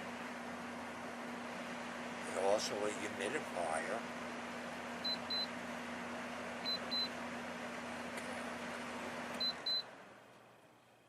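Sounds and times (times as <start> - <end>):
air conditioner fan humming: 0.0 - 11.0
double beeps: 5.0 - 5.5, 6.7 - 7.1, 9.4 - 9.9.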